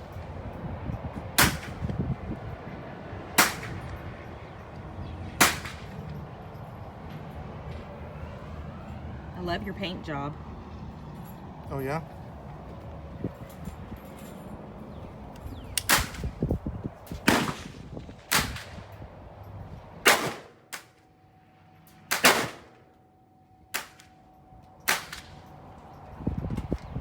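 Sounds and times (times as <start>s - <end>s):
rifle shots with echo: 3.4s - 4.0s, 5.4s - 6.0s, 17.2s - 18.9s, 20.0s - 20.9s, 22.1s - 22.8s.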